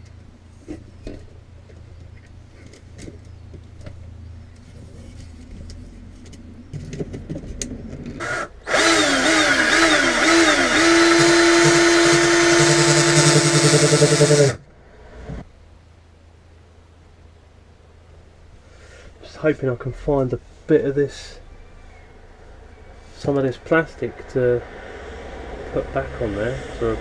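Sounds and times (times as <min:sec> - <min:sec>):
electric power tool motor: 0:08.2 - 0:14.6.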